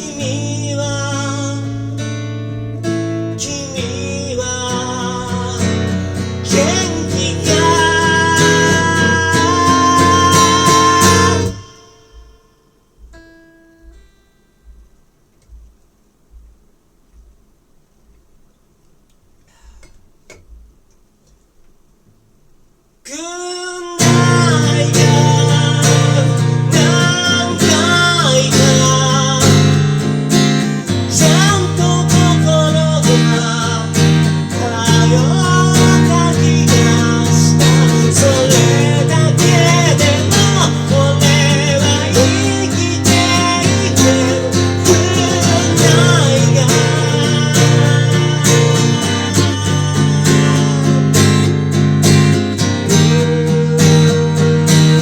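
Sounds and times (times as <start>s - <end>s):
person singing: 0.0s - 2.2s, 3.3s - 12.9s, 23.1s - 30.1s, 31.0s - 55.0s
acoustic guitar strumming: 0.0s - 17.4s, 23.1s - 55.0s.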